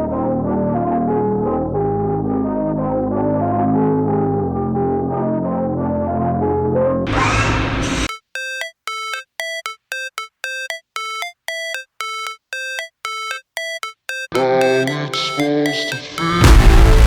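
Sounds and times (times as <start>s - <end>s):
synthesizer beeping notes: 7.2s - 17.0s
background music: 8.1s - 17.0s.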